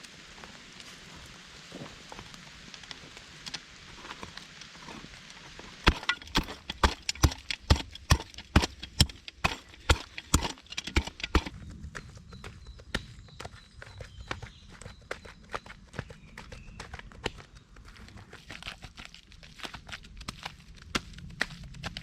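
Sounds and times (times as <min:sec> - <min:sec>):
sharp knocks: 0:05.9 - 0:11.5.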